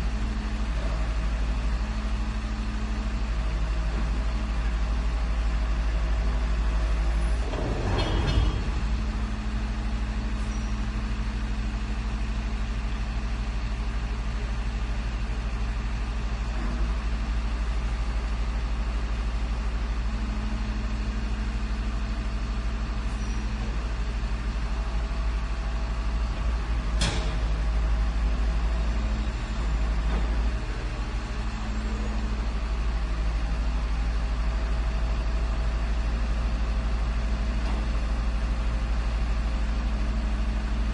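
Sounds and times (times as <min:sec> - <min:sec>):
garbage truck diesel engine running: 0:00.0 - 0:40.9
sharp knock: 0:07.7 - 0:09.1.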